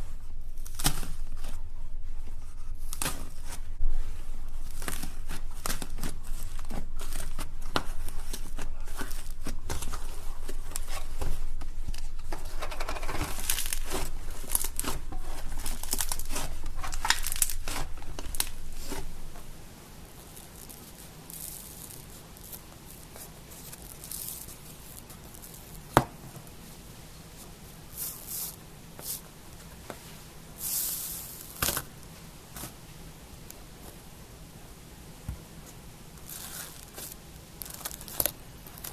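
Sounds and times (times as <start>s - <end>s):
faint handling sounds: 0.0s - 34.2s, 35.1s - 38.9s
slime crackling and popping: 0.6s - 1.2s, 2.8s - 3.6s, 4.5s - 19.2s, 20.1s - 26.0s, 36.2s - 38.9s.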